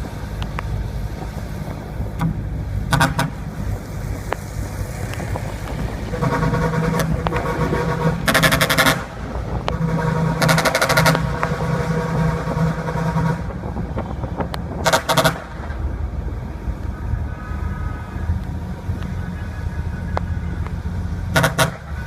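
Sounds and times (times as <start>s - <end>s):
low vehicle rumble: 0.0s - 22.0s
vehicle horn blasts: 9.7s - 13.5s, 21.3s - 21.9s.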